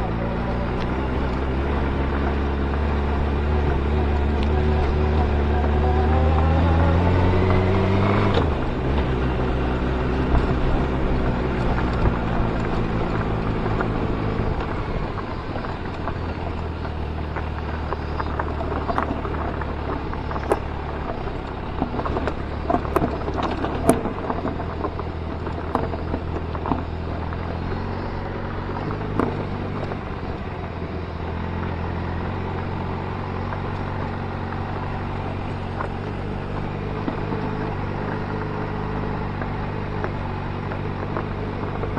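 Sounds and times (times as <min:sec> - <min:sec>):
motorcycle engine running: 0:00.0 - 0:41.9
clicks and knocks: 0:21.8 - 0:24.8.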